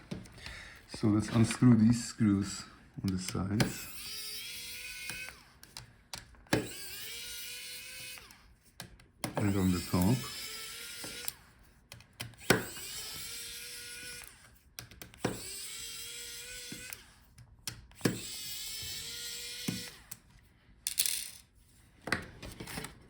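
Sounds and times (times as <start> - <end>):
electric screwdriver running: 3.2 - 5.7, 6.5 - 8.5, 9.3 - 11.5, 12.2 - 17.4, 18.0 - 20.2
clicks of small parts and tools: 19.6 - 23.0.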